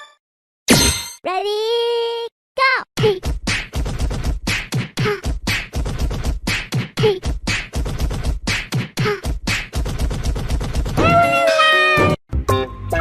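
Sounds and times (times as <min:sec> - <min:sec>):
beatbox-style percussion beat: 0:03.0 - 0:11.2.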